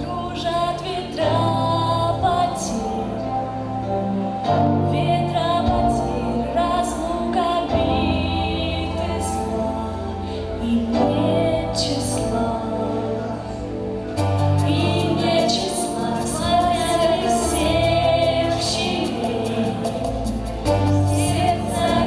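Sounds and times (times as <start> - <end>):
instrumental backing track: 0.0 - 22.0
women singing slow melody: 0.0 - 22.0.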